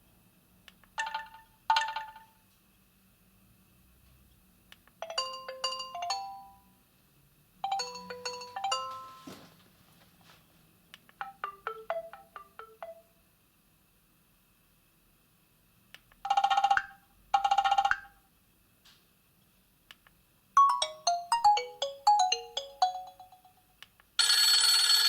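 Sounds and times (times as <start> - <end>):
marimba-like phone ringtone: 5.0 - 6.6, 7.6 - 9.4, 11.2 - 13.1, 16.3 - 18.2, 20.6 - 25.0.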